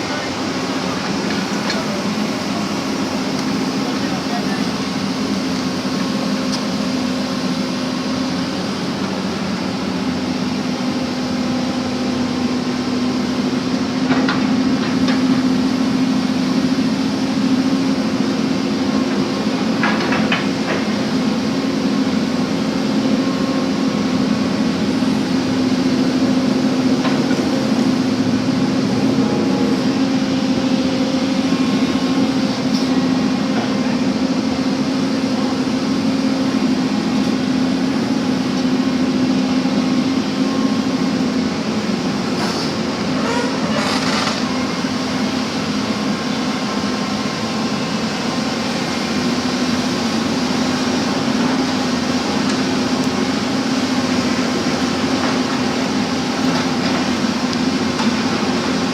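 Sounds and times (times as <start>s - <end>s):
diesel engine running: 0.0s - 58.9s.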